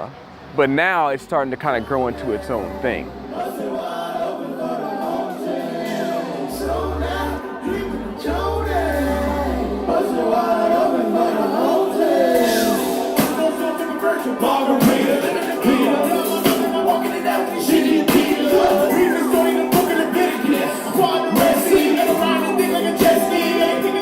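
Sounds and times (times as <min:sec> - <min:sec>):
deep bass notes: 0:00.0 - 0:03.4, 0:06.5 - 0:10.1
melodic singing: 0:00.6 - 0:24.0.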